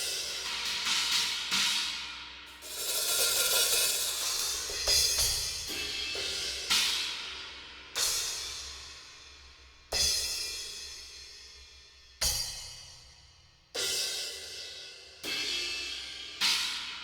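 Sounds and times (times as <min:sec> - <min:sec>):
cymbals struck and ringing: 0:02.5 - 0:05.8.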